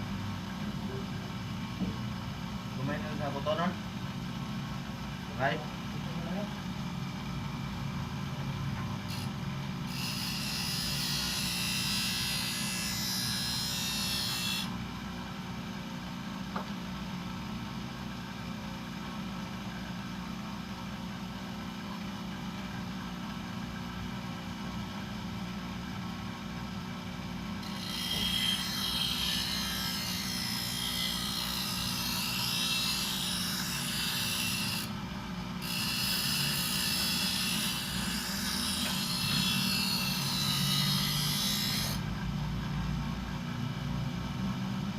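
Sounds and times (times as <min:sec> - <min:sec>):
bench grinder running: 0:09.1 - 0:14.8, 0:27.6 - 0:35.0, 0:35.6 - 0:42.1.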